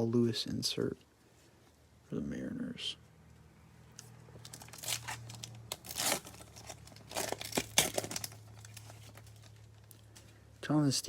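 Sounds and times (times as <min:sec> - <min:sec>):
plastic wrapper tearing and crinkling: 0:04.4 - 0:10.2.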